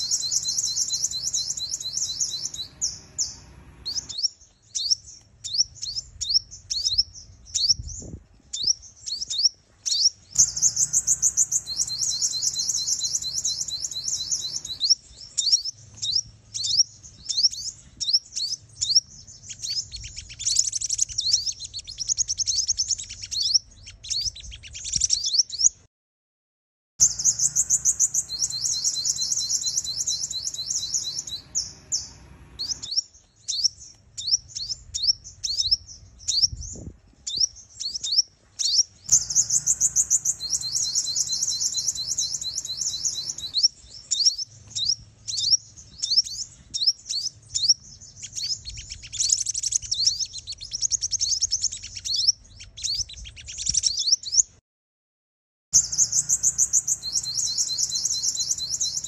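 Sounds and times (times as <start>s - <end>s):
sunbird chirps and trills: 0.0s - 25.9s, 27.0s - 54.6s, 55.8s - 59.0s.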